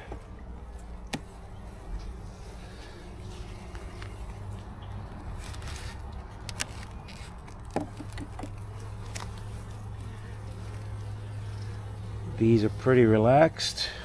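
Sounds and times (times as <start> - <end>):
bees humming: 0.0 - 5.7, 7.8 - 14.0
hive frames clicking: 0.7 - 13.2.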